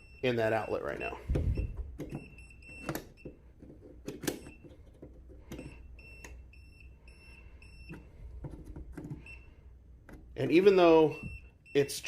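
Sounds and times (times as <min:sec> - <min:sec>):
voltage tester beeping: 0:00.0 - 0:03.4, 0:05.5 - 0:08.1, 0:10.4 - 0:12.0.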